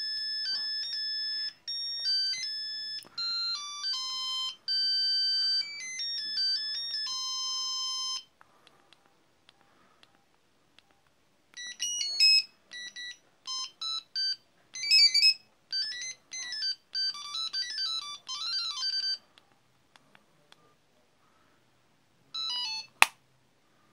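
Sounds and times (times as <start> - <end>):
phone ringtone beeping melody: 0.0 - 8.3, 11.6 - 19.2, 22.4 - 23.0.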